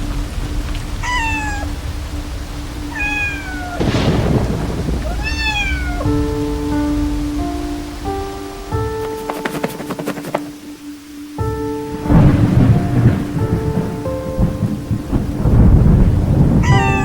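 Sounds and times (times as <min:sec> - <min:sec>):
steady rain: 0:00.0 - 0:17.0
thunder clap: 0:00.0 - 0:17.0
cat meowing: 0:01.0 - 0:01.7, 0:02.9 - 0:03.8, 0:05.0 - 0:06.2, 0:16.6 - 0:17.0.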